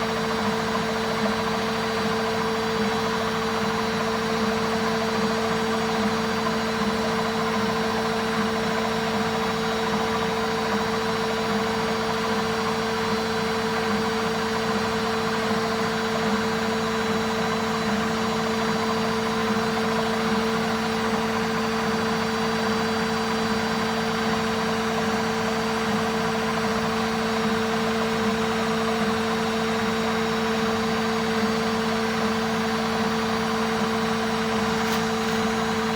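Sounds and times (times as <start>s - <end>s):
washing machine spinning: 17.4s - 35.9s.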